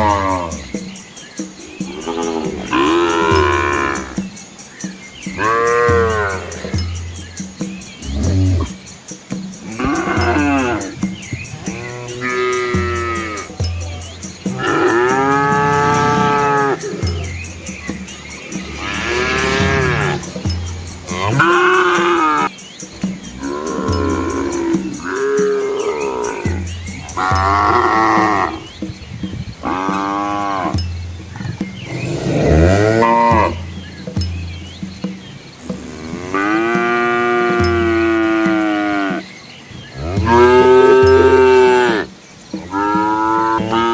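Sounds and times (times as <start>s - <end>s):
cattle mooing: 1.8s - 4.2s, 14.5s - 17.4s, 18.6s - 22.5s, 23.3s - 28.6s.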